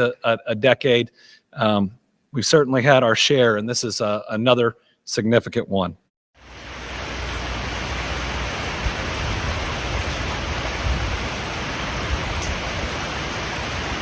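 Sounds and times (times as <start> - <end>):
flood water rushing: 6.4 - 14.0
heavy rain: 6.4 - 14.0.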